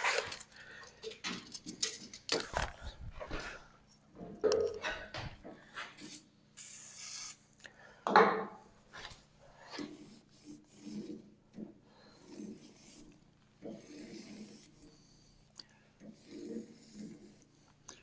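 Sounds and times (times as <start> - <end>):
tool scraping and rubbing: 0.0 - 0.6, 5.6 - 7.4, 8.9 - 18.0.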